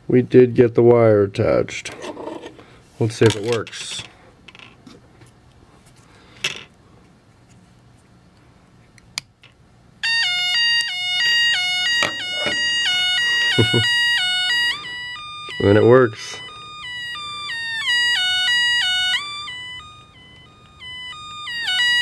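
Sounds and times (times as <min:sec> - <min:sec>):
beeping electronic tune: 0:11.0 - 0:22.0.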